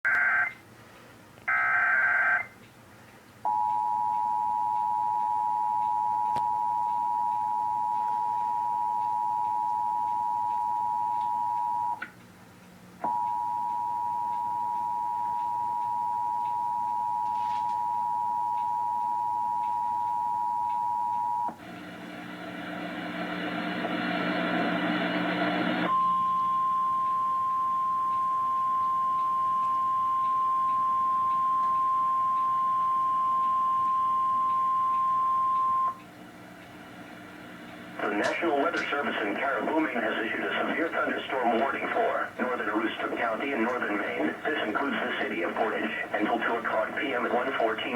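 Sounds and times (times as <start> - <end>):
steady warning alarm tone: 0.1 - 0.5, 1.5 - 2.6, 3.5 - 12.0, 13.0 - 22.5, 25.0 - 47.9
two-tone attention signal: 25.9 - 36.0.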